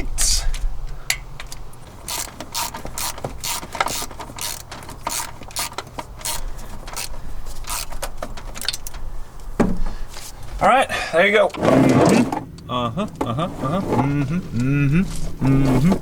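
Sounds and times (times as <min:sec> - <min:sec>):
ratchet wrench clicking: 0:01.5 - 0:09.0.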